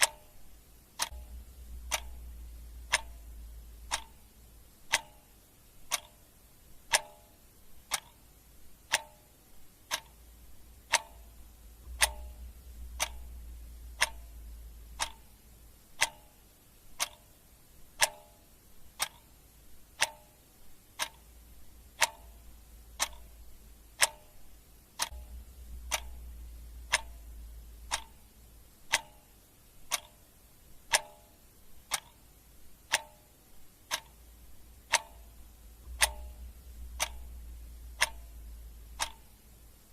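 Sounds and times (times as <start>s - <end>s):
clock ticking: 0.0s - 39.9s.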